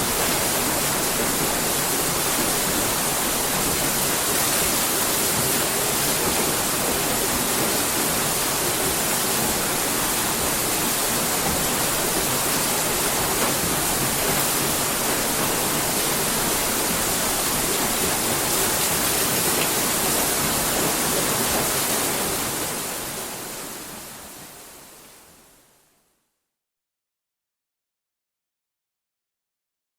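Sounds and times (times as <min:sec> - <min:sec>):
water rushing off mill wheel: 0:00.0 - 0:23.5.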